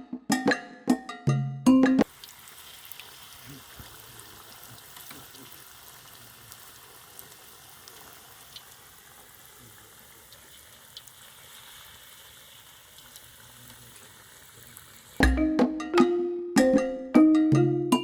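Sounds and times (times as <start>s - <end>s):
percussive music: 0.0s - 2.1s, 15.2s - 18.0s
dough sizzling in oil: 2.0s - 15.2s
oil popping: 2.0s - 15.4s.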